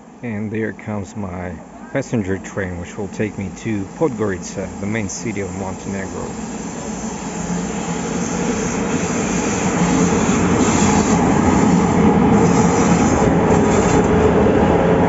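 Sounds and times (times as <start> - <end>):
train rumble: 0.0 - 15.0.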